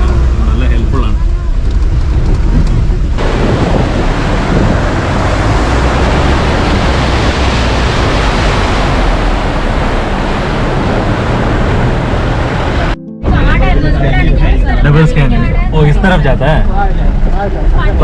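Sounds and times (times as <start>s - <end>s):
jeep rumbling: 0.0s - 18.0s
loud rushing noise: 3.2s - 13.6s.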